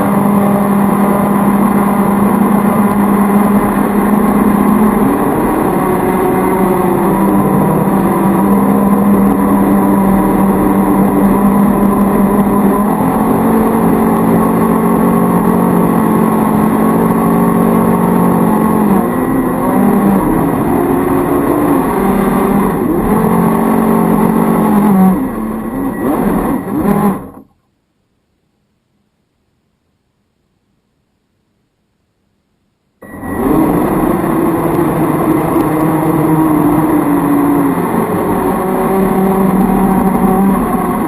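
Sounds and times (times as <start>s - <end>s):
electric motors whining: 0.0s - 27.5s, 33.0s - 41.0s.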